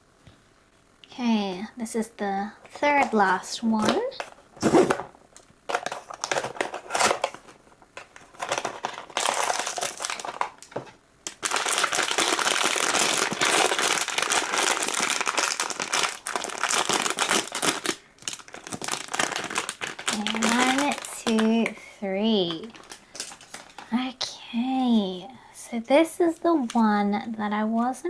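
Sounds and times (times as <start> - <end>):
packaging crinkling: 2.6 - 24.0.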